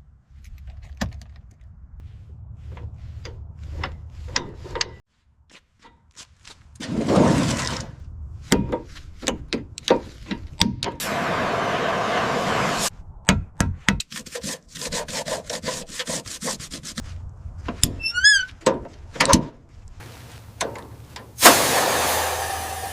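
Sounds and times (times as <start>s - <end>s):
low rumble: 0.0s - 4.8s
sharp knocks and clicks: 8.5s - 11.0s
loud burst of hissing: 11.0s - 12.9s, 21.4s - 22.9s
steady hiss: 11.0s - 12.9s, 20.0s - 22.9s.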